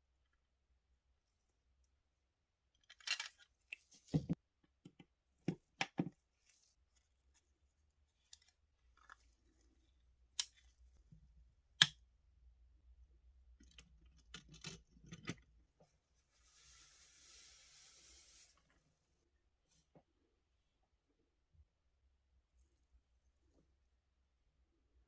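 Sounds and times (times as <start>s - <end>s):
clicks of small model car parts: 2.8s - 3.9s.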